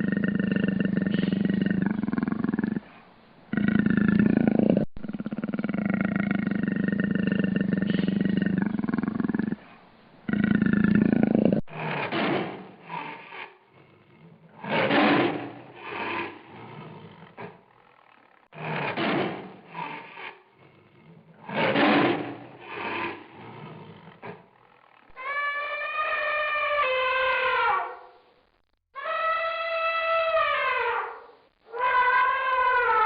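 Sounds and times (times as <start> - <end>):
lion grunting: 0.0 - 17.6, 18.5 - 25.2
lion roaring: 0.0 - 17.6, 18.5 - 24.5.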